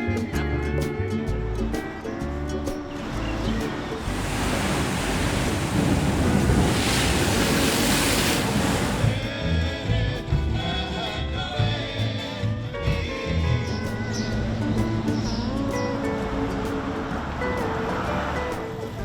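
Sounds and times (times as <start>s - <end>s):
background music: 0.0s - 7.0s, 7.9s - 19.0s
loud rushing noise: 3.8s - 9.3s.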